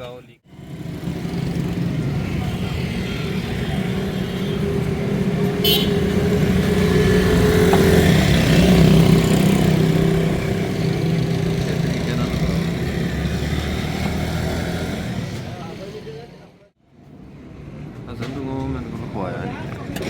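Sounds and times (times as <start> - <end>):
engine humming: 0.7 - 16.0.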